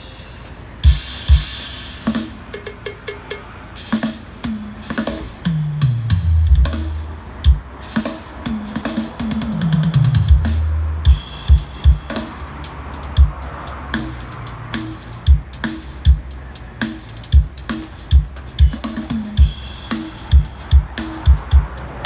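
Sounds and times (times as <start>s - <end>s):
electronic music with drum-machine beat: 0.0s - 22.0s
deep bass notes sliding down: 5.4s - 7.2s, 9.4s - 11.8s.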